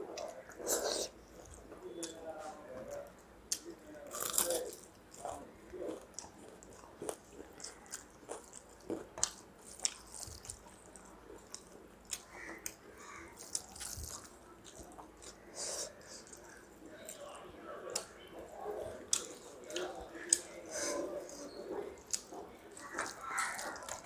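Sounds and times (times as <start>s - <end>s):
person chewing and biting: 3.5s - 5.3s, 6.0s - 12.3s, 13.4s - 16.4s
food crunch: 3.5s - 5.4s, 13.4s - 17.2s, 21.2s - 24.0s.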